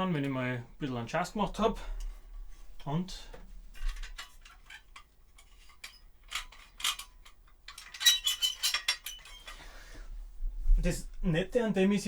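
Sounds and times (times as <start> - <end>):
metal press clicking and rattling: 3.8 - 9.6.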